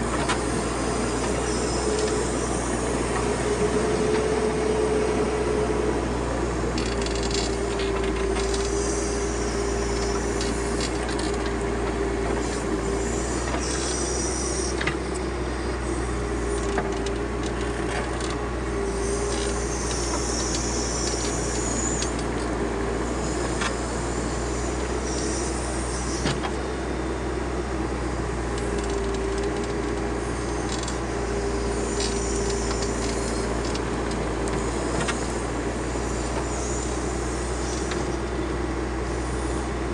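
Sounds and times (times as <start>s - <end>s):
diesel engine under load: 0.0s - 39.9s
engine whine: 0.0s - 39.9s
soil scraping and rustling: 28.6s - 38.2s.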